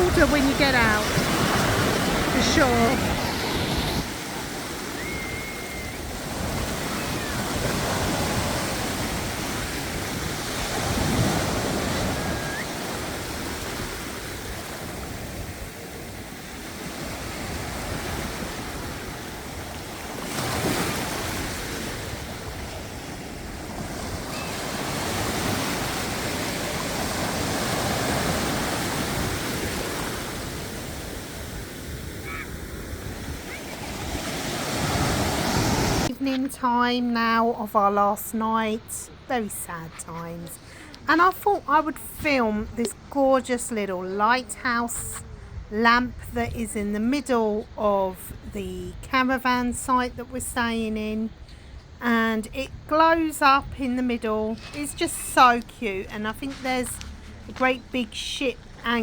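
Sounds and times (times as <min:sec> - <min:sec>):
wind on microphone: 0:00.0 - 0:36.2, 0:45.0 - 0:52.0
small waves washing ashore: 0:00.0 - 0:36.4, 0:52.6 - 0:59.0.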